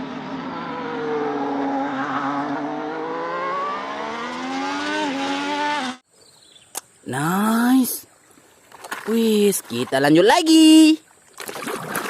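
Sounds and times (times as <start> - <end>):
race car engine revving: 0.0 - 6.0.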